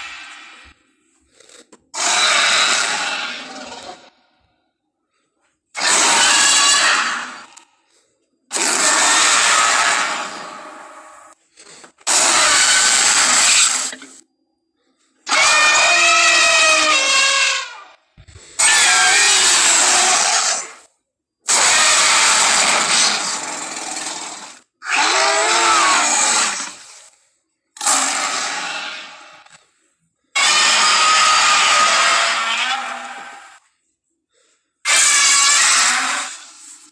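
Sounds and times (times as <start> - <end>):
monster roars: 2.0 - 4.1, 5.8 - 7.6, 8.5 - 11.4, 12.1 - 14.0, 18.6 - 20.8, 21.5 - 27.1, 27.8 - 29.5, 30.3 - 33.6, 34.8 - 36.8.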